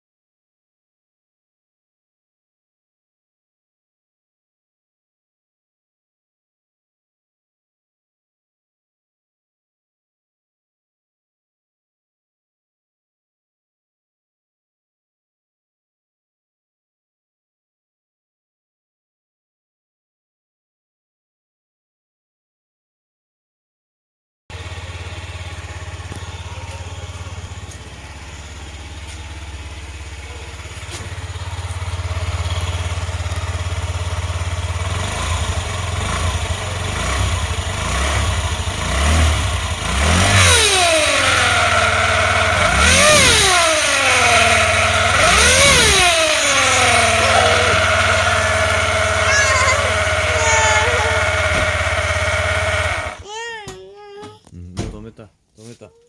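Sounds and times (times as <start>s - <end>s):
scooter engine idling and revving: 24.5s - 53.9s.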